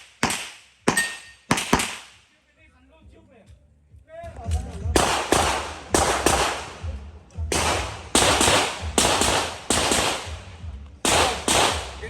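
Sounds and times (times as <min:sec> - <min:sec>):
pistol shots echoing: 0:00.0 - 0:02.2, 0:05.0 - 0:12.0.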